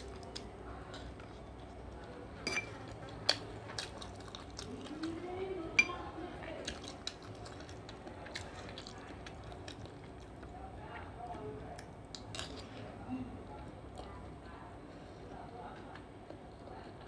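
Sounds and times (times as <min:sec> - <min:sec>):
chewing: 0:00.0 - 0:17.0
spoon clinking on a plate: 0:02.4 - 0:02.9, 0:05.8 - 0:06.0.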